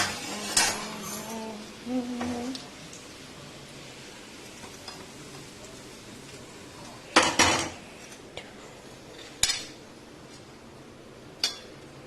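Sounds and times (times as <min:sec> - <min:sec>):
metal spoon scraping a pan: 0:00.1 - 0:01.4.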